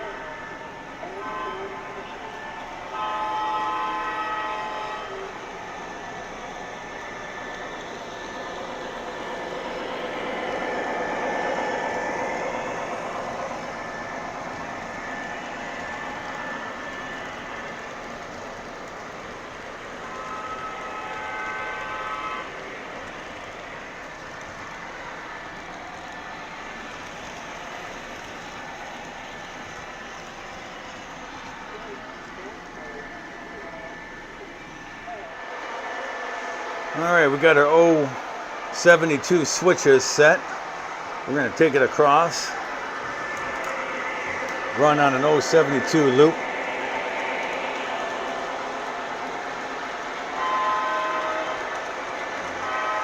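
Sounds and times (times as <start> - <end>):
model train horn blasts: 0.0 - 5.7, 20.0 - 22.6, 50.2 - 53.0
model train running on track: 0.0 - 53.0.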